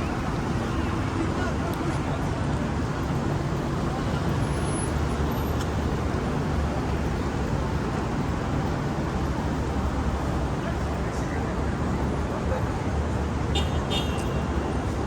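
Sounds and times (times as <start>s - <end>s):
road traffic rumble: 0.0s - 15.0s.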